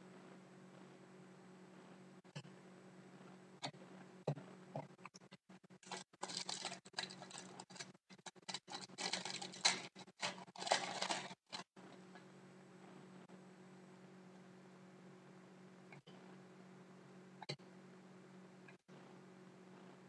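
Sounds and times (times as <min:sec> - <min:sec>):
cards rustling and scraping: 0:05.8 - 0:11.7.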